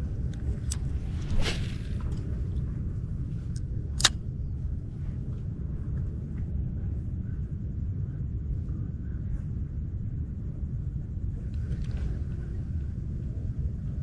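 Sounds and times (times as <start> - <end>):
sharp click: 3.6 - 4.2.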